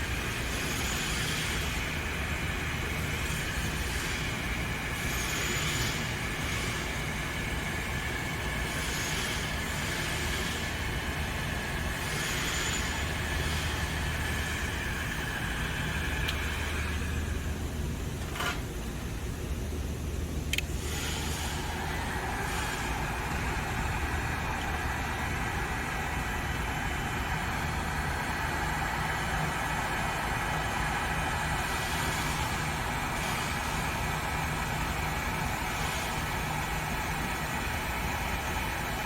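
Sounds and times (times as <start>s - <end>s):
heat gun blowing: 20.8s - 25.0s.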